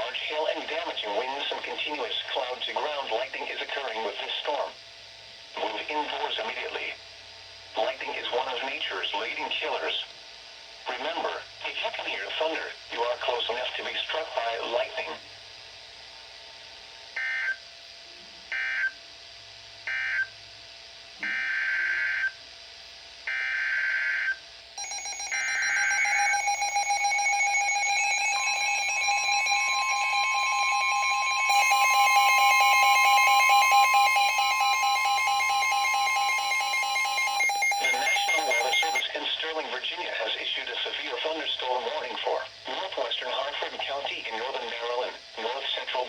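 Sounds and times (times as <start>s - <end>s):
buzzing electronic tones: 24.8s - 39.0s
steady high alert tone: 24.8s - 39.0s
warbling data bursts: 24.8s - 39.0s.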